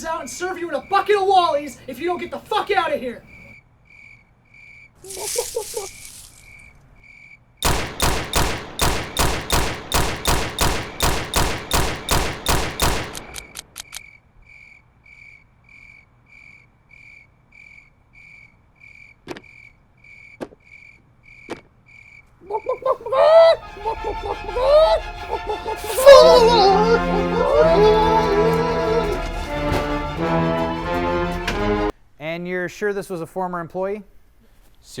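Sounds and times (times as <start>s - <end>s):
crickets chirping: 0.0s - 7.6s, 13.4s - 25.8s
rapid gunshots: 7.6s - 13.6s
sharp clicks: 7.6s - 14.1s.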